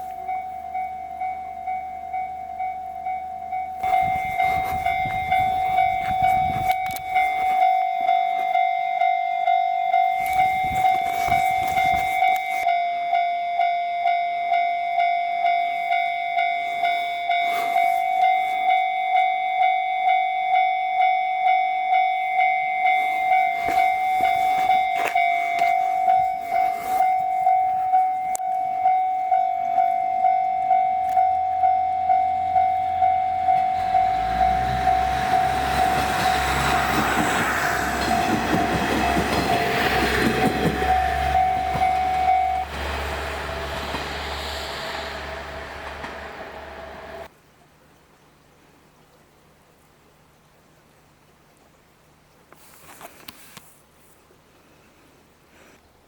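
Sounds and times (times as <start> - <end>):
train wheels rumbling on rails: 0.0 - 8.5, 10.0 - 12.6, 22.8 - 47.3
railroad crossing bell ringing: 0.0 - 47.3.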